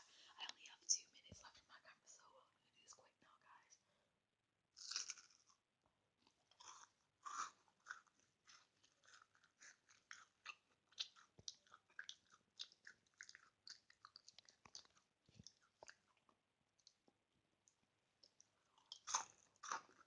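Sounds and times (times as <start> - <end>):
chewing crunchy food: 4.8 - 5.6, 6.2 - 20.0.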